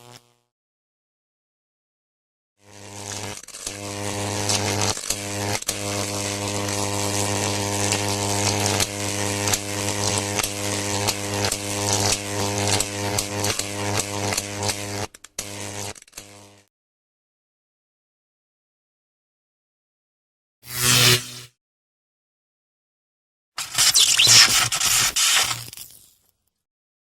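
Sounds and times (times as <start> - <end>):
crackling sparks: 0.0 - 0.5, 2.8 - 16.7, 23.6 - 26.3
electrical arcing hum: 0.0 - 0.5, 23.6 - 26.1.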